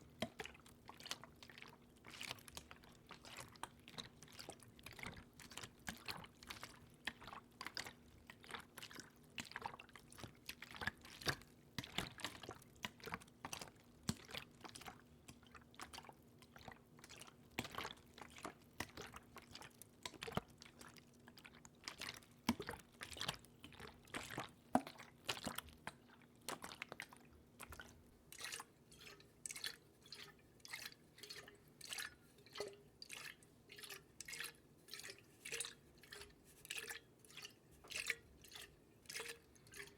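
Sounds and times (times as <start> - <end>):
water drips and splashes: 0.0 - 39.9
patter of water drops: 21.9 - 39.9.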